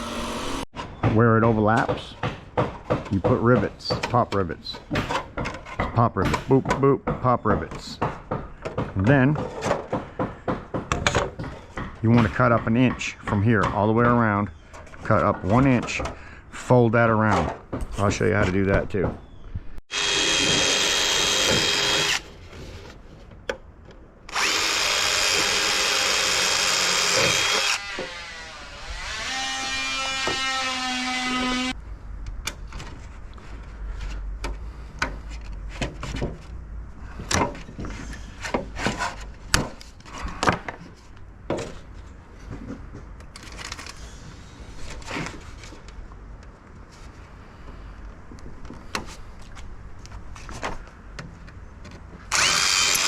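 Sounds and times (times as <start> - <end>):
power drill running: 0.0 - 0.7, 19.9 - 22.3, 24.3 - 31.7, 52.3 - 53.0.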